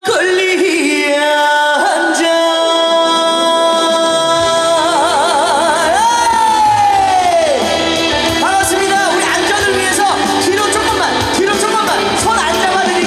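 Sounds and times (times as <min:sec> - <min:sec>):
band playing: 0:03.3 - 0:13.0.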